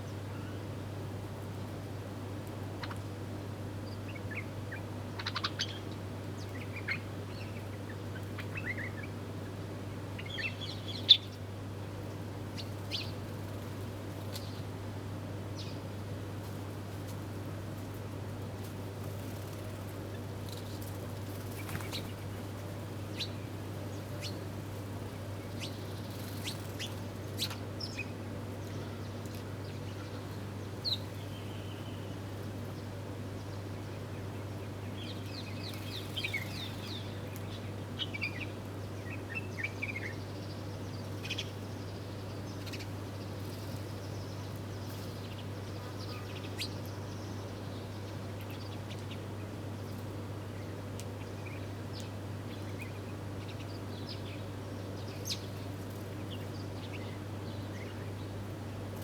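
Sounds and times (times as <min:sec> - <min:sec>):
wild birds chirping: 0:19.3 - 0:32.8, 0:33.4 - 0:58.4.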